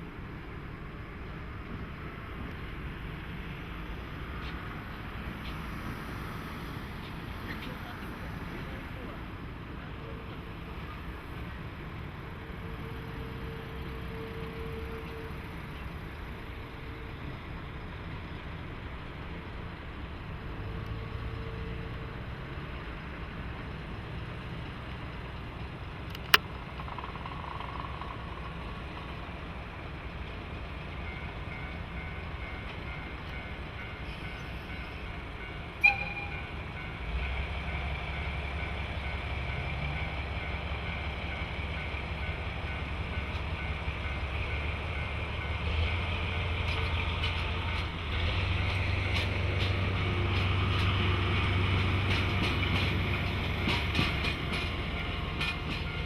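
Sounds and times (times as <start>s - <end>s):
locomotive rumbling: 0.0s - 56.0s
sharp clicks: 26.1s - 26.4s.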